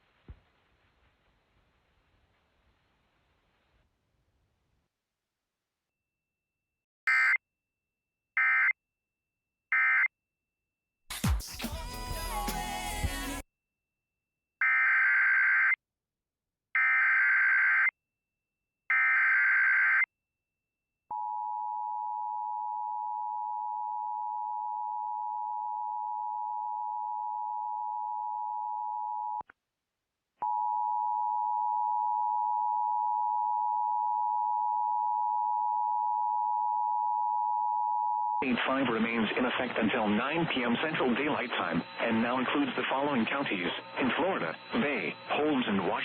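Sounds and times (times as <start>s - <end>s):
buzzy digital header bursts: 40.6s - 46.0s.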